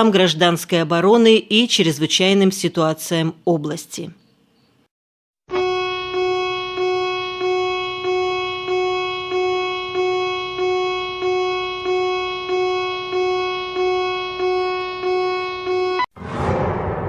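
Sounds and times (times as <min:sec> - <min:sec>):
pulsing electronic alarm tone: 0:05.5 - 0:16.1.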